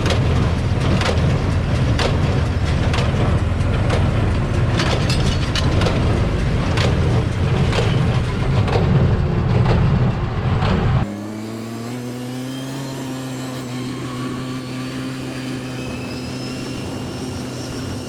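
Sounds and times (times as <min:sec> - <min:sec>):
machinery sharp knocks and cracks: 0:00.0 - 0:11.0
tractor engine droning: 0:00.0 - 0:18.0.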